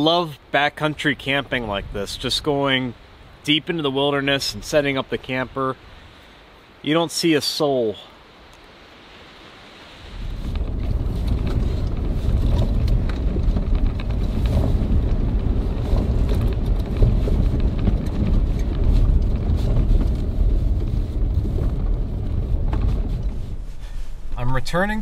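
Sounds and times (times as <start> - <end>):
engine and tyres rumbling: 10.0 - 25.0
knocks and rattles: 10.5 - 23.6.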